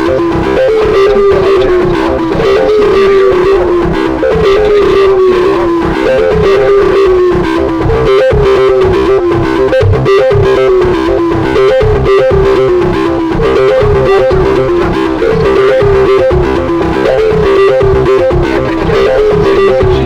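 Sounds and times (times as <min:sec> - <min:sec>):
gliding melody over steady beat: 0:00.0 - 0:20.0.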